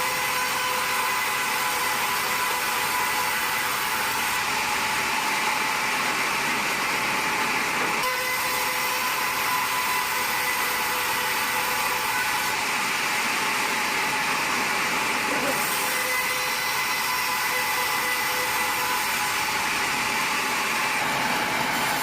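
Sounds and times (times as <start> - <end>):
sawmill machinery hissing: 7.8 - 22.0.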